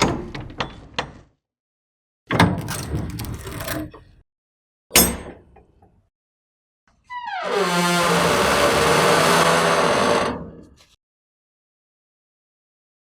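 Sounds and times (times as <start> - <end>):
rusty metal door screech: 2.6 - 4.0, 7.2 - 10.8
metal door clank: 4.9 - 5.5.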